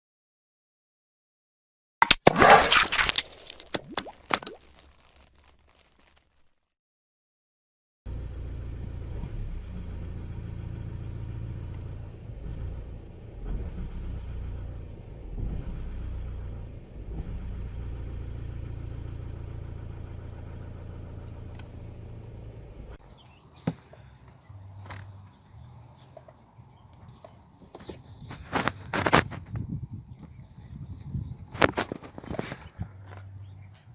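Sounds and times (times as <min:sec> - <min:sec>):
car engine idling unevenly: 0:18.1 - 0:28.6.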